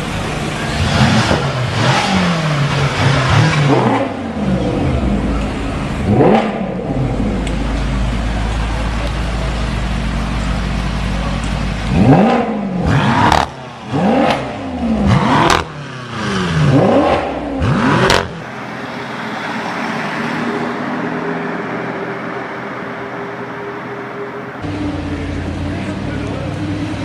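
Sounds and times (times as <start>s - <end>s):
car engine revving and idling: 0.0s - 27.0s.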